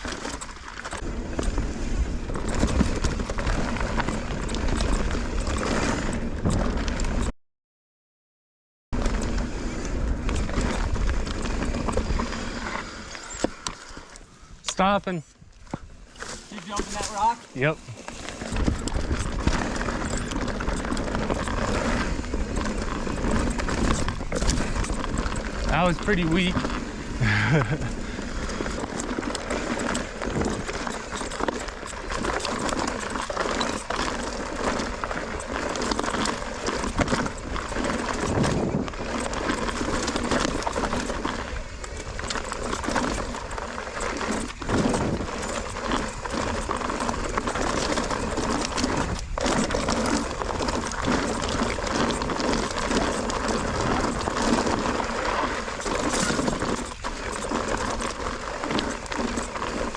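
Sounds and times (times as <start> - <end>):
bike rattling over rocks: 0.0 - 7.3, 9.0 - 59.9.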